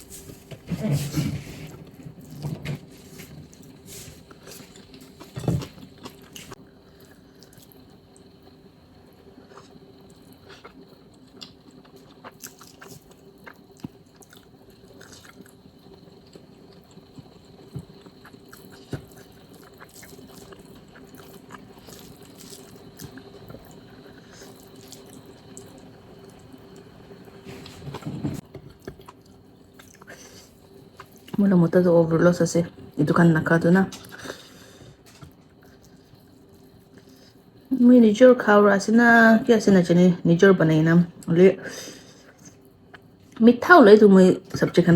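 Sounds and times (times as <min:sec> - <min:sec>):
faint steady hum: 0:00.0 - 0:44.9
person chewing food: 0:03.1 - 0:07.8, 0:09.4 - 0:26.8, 0:27.5 - 0:31.4.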